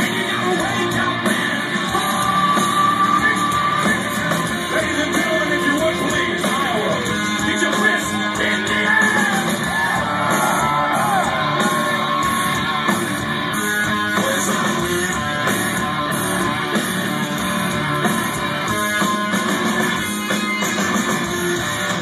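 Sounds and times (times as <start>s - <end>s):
person singing: 0.0s - 12.1s
hard rock band playing: 0.0s - 22.0s.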